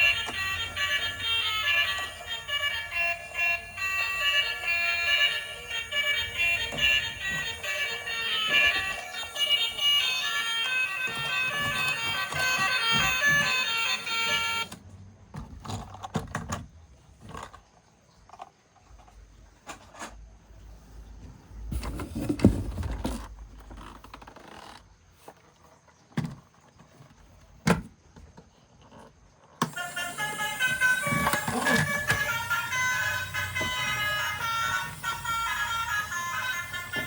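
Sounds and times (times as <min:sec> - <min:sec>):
cheerful background music: 0:00.0 - 0:14.7, 0:29.7 - 0:37.0
toy vehicles clicking and rattling: 0:00.0 - 0:14.8, 0:28.7 - 0:37.0.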